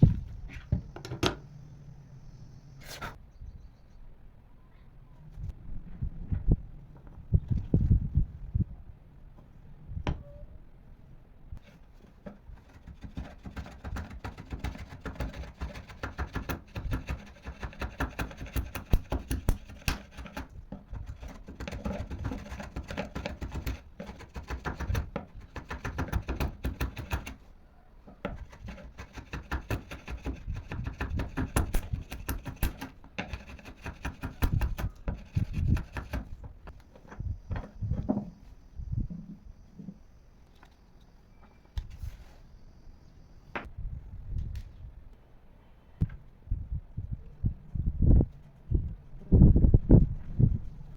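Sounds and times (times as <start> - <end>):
hand tool scraping wood: 11.6 - 27.4, 28.2 - 36.6.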